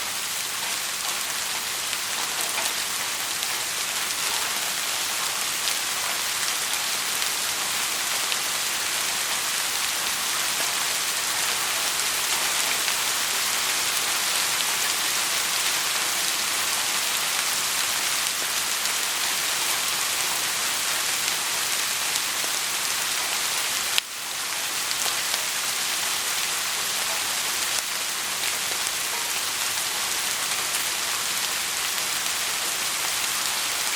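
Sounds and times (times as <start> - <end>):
steady rain hiss: 0.0 - 33.9.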